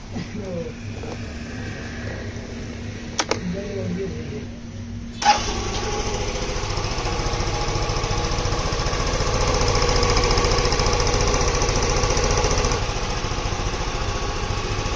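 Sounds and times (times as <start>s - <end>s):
motorcycle engine running: 5.2s - 14.9s.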